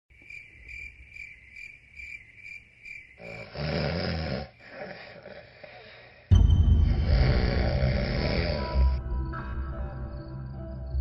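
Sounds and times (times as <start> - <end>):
insect chirping: 0.1 - 11.0.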